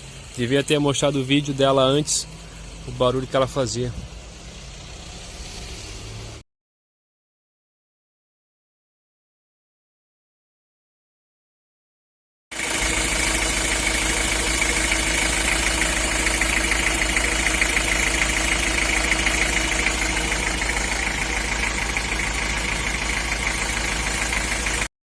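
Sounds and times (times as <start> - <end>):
diesel engine idling: 0.0 - 6.4, 12.6 - 24.9.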